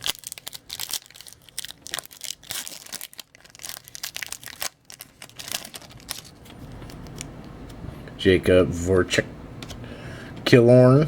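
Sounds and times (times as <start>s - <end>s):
card pack wrapper crinkling: 0.0s - 7.3s.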